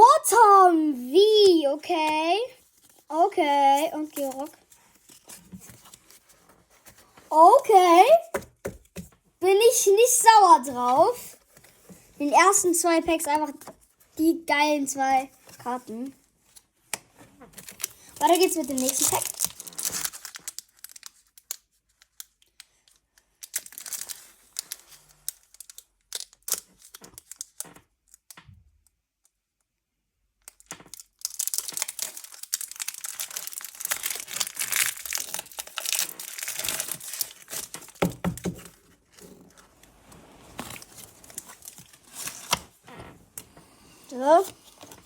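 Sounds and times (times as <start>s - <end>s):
foil wrapper crinkling and tearing: 17.6s - 28.4s, 30.4s - 39.7s, 40.5s - 42.8s.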